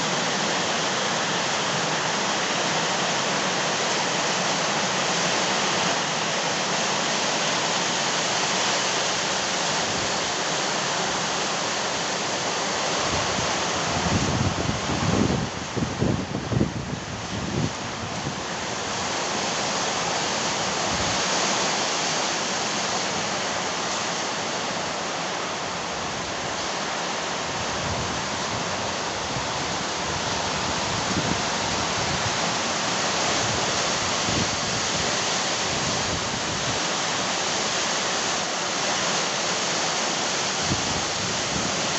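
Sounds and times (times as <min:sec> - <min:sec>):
heavy rain pouring: 0:00.0 - 0:41.9
wind gusting: 0:12.9 - 0:19.2, 0:27.4 - 0:36.8.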